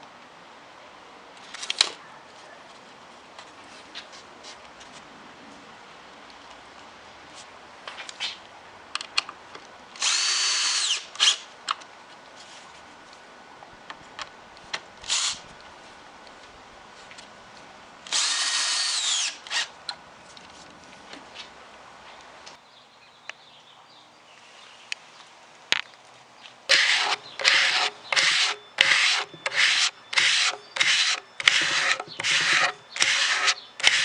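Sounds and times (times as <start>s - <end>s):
power drill whining: 18.1s - 19.6s, 26.7s - 34.0s.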